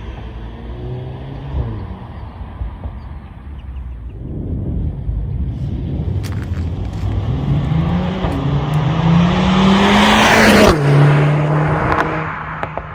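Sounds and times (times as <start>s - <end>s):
car engine accelerating hard: 5.6s - 12.9s.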